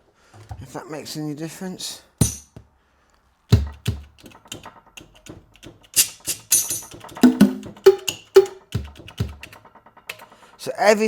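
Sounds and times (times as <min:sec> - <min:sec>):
deep drum thumps: 0:03.5 - 0:04.0, 0:07.2 - 0:09.4
pitched drum hits: 0:06.3 - 0:09.4.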